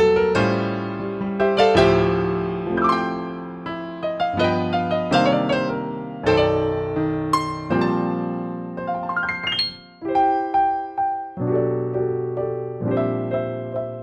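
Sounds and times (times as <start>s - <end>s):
digital piano chords: 0.0s - 14.0s.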